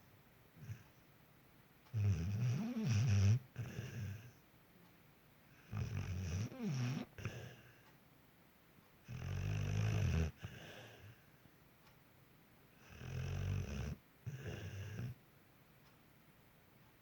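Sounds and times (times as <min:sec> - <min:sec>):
dog snoring: 0:00.6 - 0:01.0, 0:01.9 - 0:04.4, 0:05.6 - 0:07.8, 0:09.0 - 0:11.2, 0:12.8 - 0:15.2.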